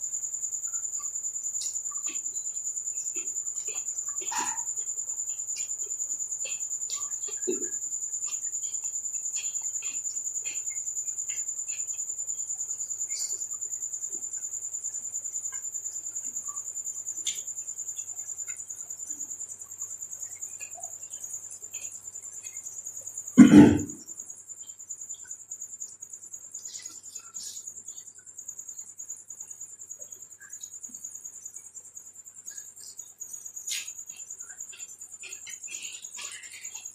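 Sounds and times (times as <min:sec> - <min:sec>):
crickets chirring: 0:00.0 - 0:36.9
cough-like throat sound: 0:04.3 - 0:04.7, 0:07.4 - 0:07.8, 0:23.4 - 0:24.0.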